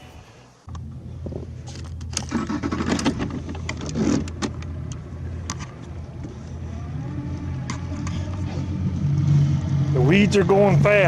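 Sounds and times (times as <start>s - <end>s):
boat motor humming: 0.0s - 11.0s
sharp knocks and rattles: 1.7s - 4.8s.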